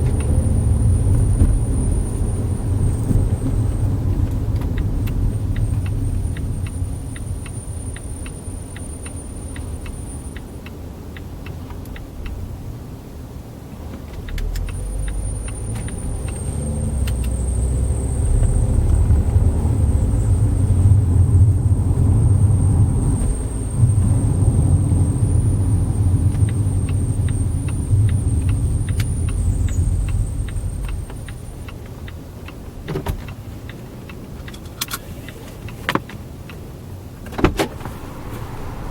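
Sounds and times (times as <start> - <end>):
car engine and road rumble: 0.0 - 38.9
sharp clicks: 26.3 - 36.6.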